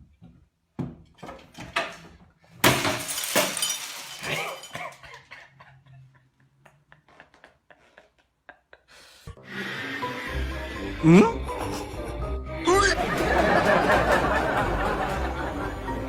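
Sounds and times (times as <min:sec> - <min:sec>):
glass crashing and shattering: 0:02.6 - 0:05.2
glass pieces clinking: 0:02.6 - 0:05.2.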